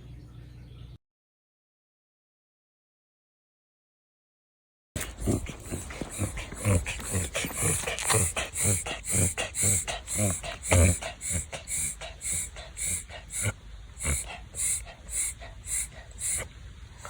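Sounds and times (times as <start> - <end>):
dog snorting breaths: 5.0 - 17.0.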